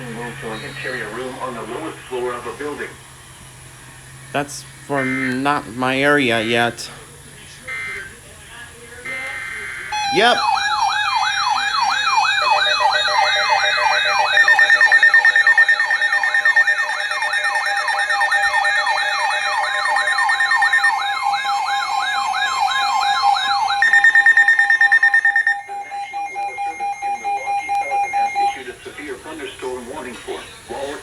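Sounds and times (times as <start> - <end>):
steady alarm tones: 0.0 - 31.0
sweeping siren-like tone: 9.1 - 28.6
pulsing steady tone: 9.1 - 28.7.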